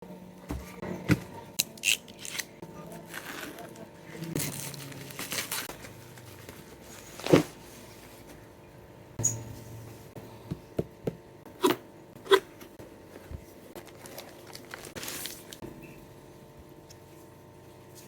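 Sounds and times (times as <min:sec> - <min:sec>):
packaging crinkling and rustling: 0:03.0 - 0:07.6, 0:13.8 - 0:15.6.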